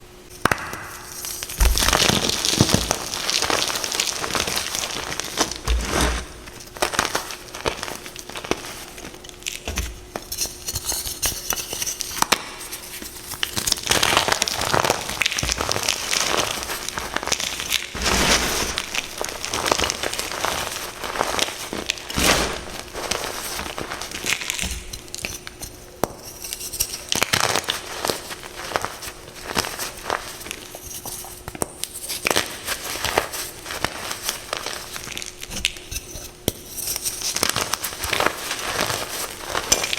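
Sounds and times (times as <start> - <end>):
chalk being crushed: 10.2 - 30.4.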